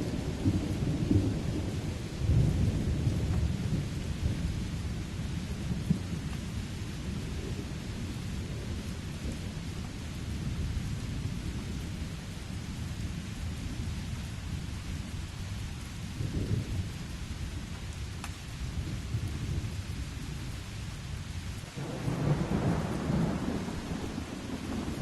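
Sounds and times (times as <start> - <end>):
steady rain: 0.0 - 25.0
rolling thunder rumbling: 16.1 - 17.7, 21.7 - 25.0.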